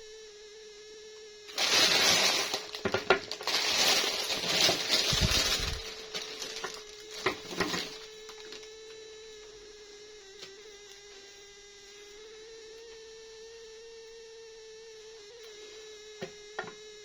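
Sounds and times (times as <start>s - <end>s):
plastic packaging crinkling: 1.5s - 8.8s.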